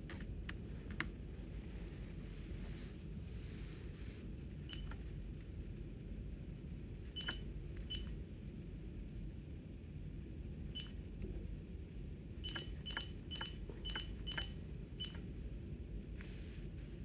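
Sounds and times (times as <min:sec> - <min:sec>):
steady low hum: 0:00.0 - 0:17.0
short clicking beeps: 0:07.2 - 0:08.1, 0:12.5 - 0:15.2.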